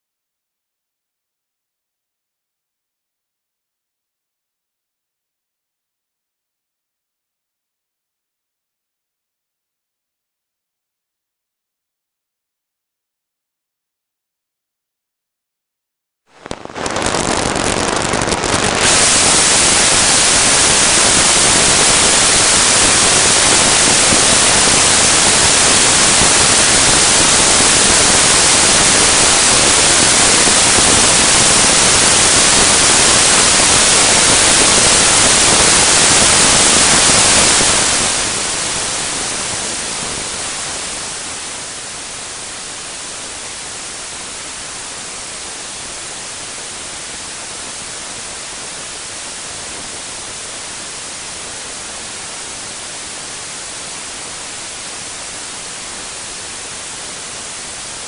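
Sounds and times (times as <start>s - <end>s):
steady hiss: 16.4s - 58.0s.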